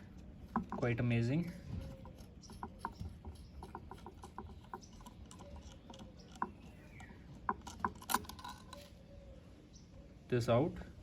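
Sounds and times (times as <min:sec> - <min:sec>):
small metal parts clicking: 0:01.8 - 0:08.9.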